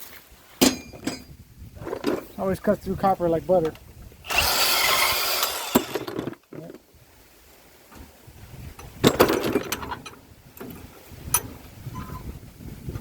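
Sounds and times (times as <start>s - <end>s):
sharp metal clanks: 0.6s - 1.3s
band saw cutting metal pipe: 4.3s - 6.2s.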